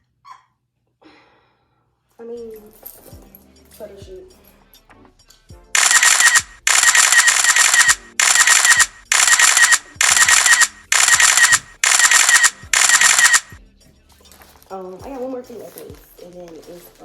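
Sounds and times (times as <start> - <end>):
camera shutter clicks: 5.8 - 13.6.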